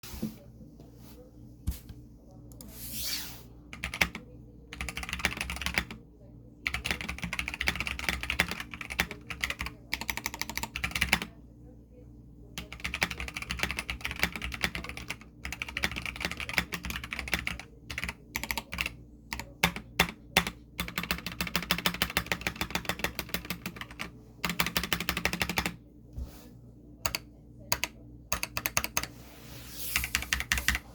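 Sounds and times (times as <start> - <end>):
mechanical keyboard typing: 3.7 - 6.0, 6.6 - 11.3, 12.6 - 25.8, 27.0 - 29.1, 30.0 - 30.8.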